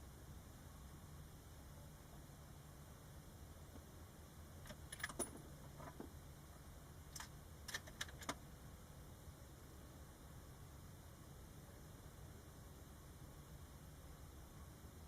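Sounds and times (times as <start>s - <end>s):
small metallic clicks and clinks: 4.6s - 6.1s, 7.1s - 8.4s.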